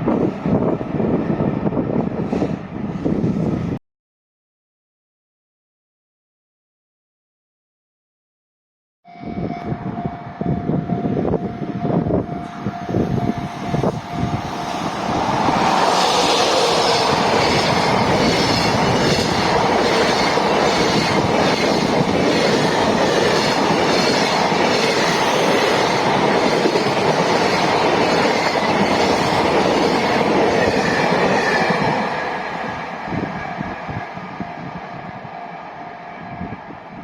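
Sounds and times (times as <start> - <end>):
freight train wheels clacking: 12.5 - 34.3.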